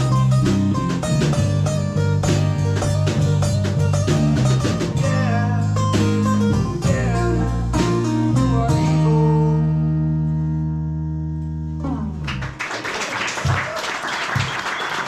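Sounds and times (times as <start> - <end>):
acoustic guitar strumming: 0.0 - 10.2.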